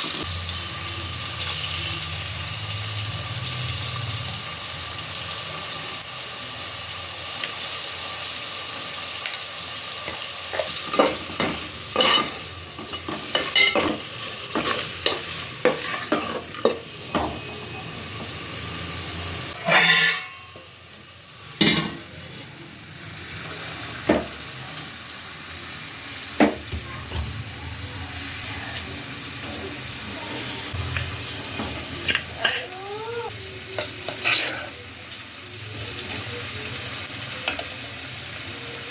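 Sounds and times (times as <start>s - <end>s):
food sizzling in a pan: 0.0s - 38.9s
metal spoon scraping a pan: 10.1s - 16.9s, 19.5s - 20.6s, 33.8s - 34.8s.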